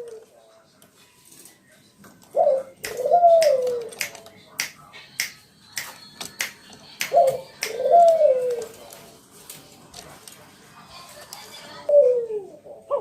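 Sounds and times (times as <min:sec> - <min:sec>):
dove cooing: 0:00.0 - 0:00.3, 0:02.3 - 0:04.0, 0:07.1 - 0:09.0, 0:11.8 - 0:13.0.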